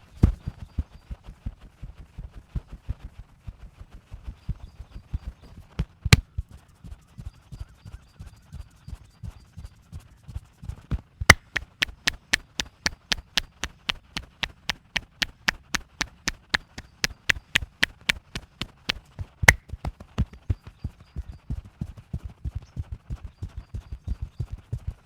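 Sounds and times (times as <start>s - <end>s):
sharp wooden clacks: 11.3s - 20.5s.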